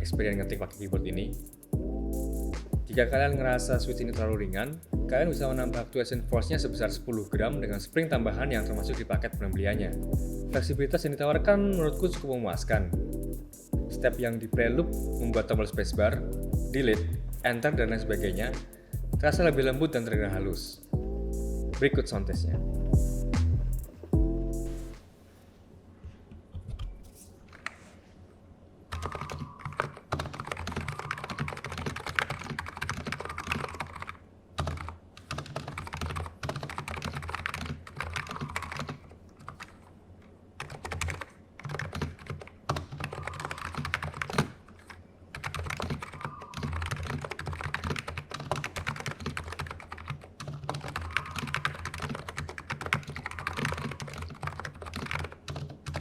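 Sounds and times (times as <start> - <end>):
keyboard typing: 28.9 - 39.9, 40.6 - 56.0.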